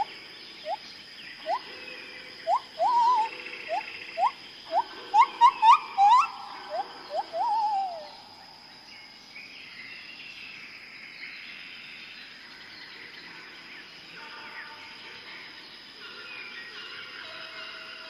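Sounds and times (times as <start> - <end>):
chorus of faint bird calls: 0.0 - 18.0
high insect drone: 0.0 - 18.0
loud whistled bird call: 1.4 - 1.7, 2.4 - 8.2.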